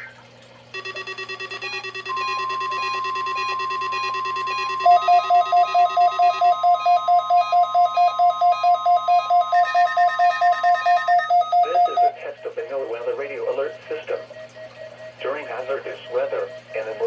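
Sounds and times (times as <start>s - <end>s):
loud fast beeping: 0.7s - 12.2s
alert receivers beeping: 0.7s - 17.0s
steady alarm tone: 0.7s - 17.0s.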